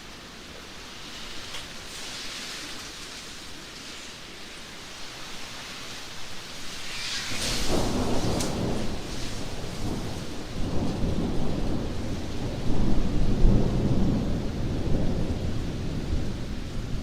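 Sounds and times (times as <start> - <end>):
steady rain: 0.0 - 17.0
thunder rumble: 6.4 - 17.0.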